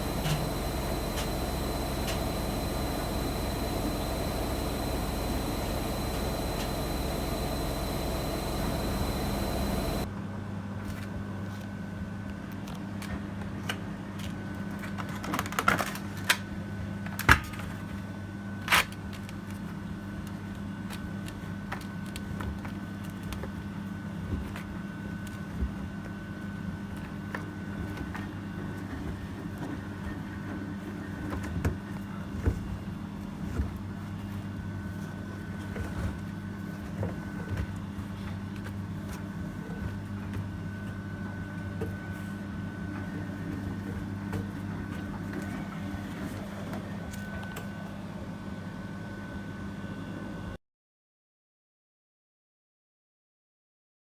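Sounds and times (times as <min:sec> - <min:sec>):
low hum: 0:00.0 - 0:10.1
washing machine running: 0:00.0 - 0:10.1, 0:21.2 - 0:48.3.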